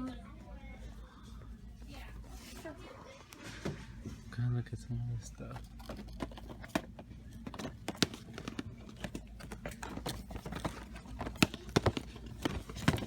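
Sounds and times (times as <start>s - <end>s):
plastic packages clicking and knocking: 5.4s - 13.0s.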